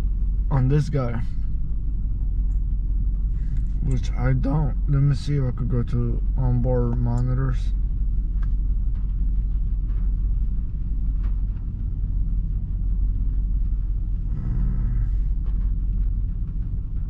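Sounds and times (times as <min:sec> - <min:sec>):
engine idling with misfires: 0:00.0 - 0:17.0.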